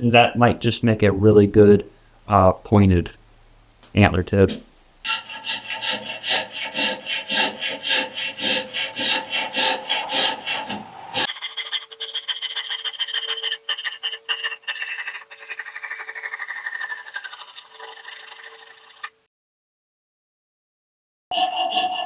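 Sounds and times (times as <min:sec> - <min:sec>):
file scraping on antler: 0:05.1 - 0:19.2.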